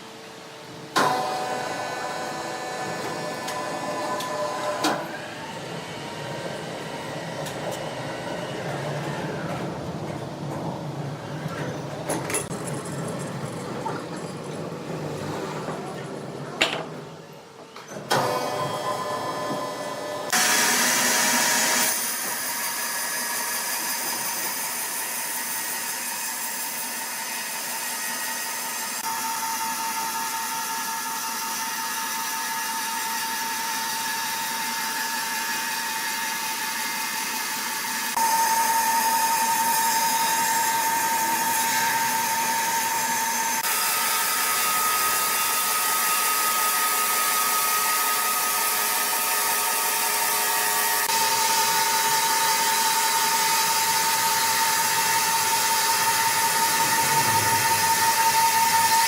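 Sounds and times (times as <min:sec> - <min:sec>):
sawmill saw whining: 0:18.1 - 0:59.0.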